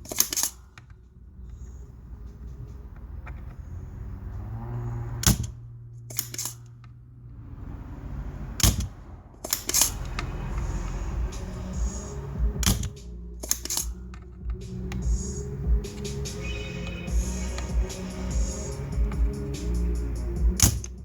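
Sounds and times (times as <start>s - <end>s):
tools clicking and snapping: 0.0s - 1.0s, 5.2s - 7.0s, 8.6s - 10.3s, 12.6s - 15.0s, 20.6s - 21.0s
steady low hum: 0.0s - 21.0s.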